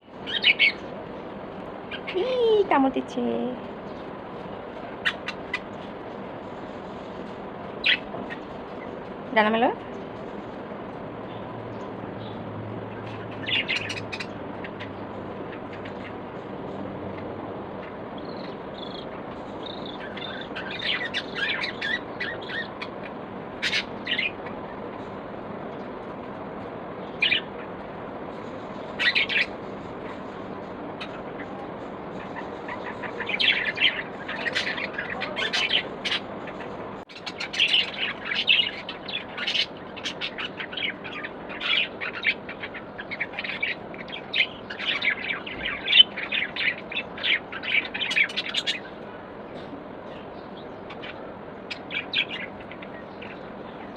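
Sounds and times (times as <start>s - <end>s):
steady low background noise: 0.0s - 53.9s
budgerigars chirping: 0.2s - 0.9s, 5.0s - 5.8s, 7.8s - 8.5s, 13.0s - 16.2s, 17.8s - 24.6s, 27.1s - 27.7s, 29.0s - 29.6s, 32.2s - 49.0s, 50.1s - 53.9s.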